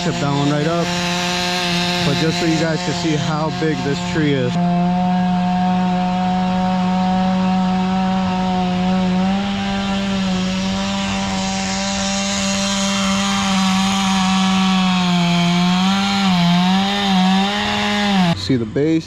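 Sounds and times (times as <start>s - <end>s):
chainsaw at full throttle: 0.0s - 18.5s.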